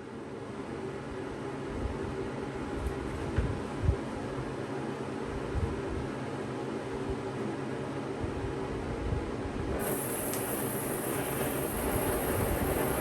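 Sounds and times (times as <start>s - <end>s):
electric fan humming: 9.5s - 13.0s
high hiss: 9.8s - 13.0s.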